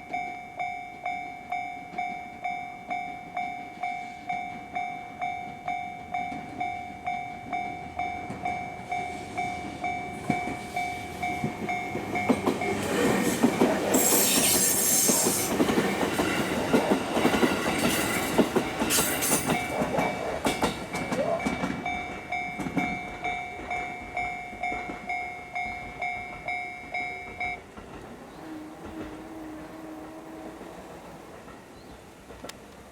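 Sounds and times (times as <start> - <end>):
train wheels clattering: 8.3 - 32.9.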